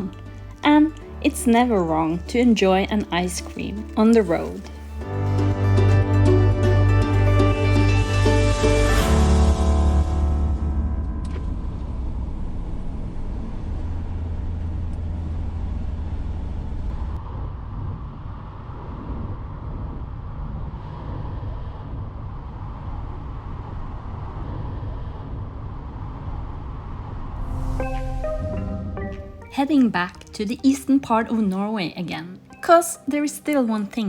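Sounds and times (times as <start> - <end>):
van engine and tyre rumble: 10.5 - 27.4.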